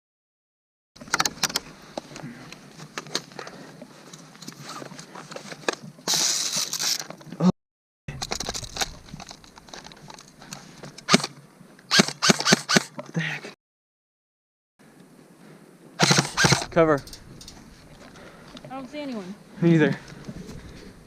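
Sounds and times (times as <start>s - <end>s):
gear rustling and crinkling: 1.0s - 7.3s, 8.2s - 11.0s
clicks and knocks of gear: 8.1s - 11.3s.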